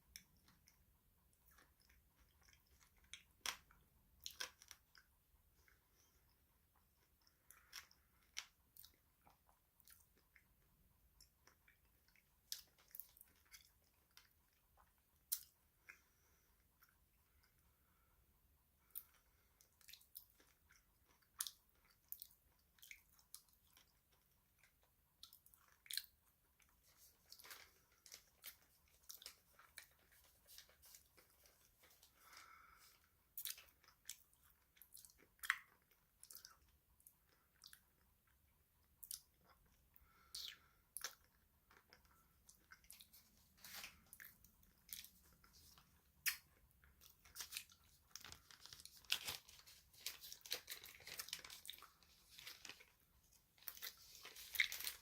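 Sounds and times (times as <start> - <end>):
person chewing crunchy snacks: 1.4 - 5.8, 7.0 - 10.4, 18.9 - 38.0, 39.0 - 55.0.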